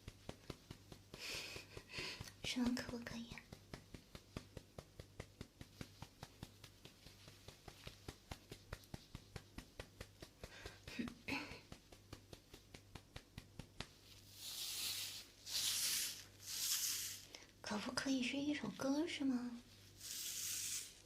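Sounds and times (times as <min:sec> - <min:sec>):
soft whisper: 0:01.5 - 0:03.9, 0:10.3 - 0:11.9, 0:17.1 - 0:21.0.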